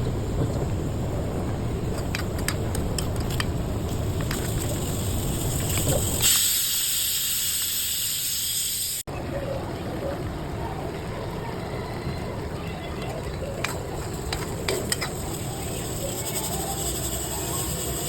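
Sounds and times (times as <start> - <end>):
low rumbling noise: 0.0 - 6.2.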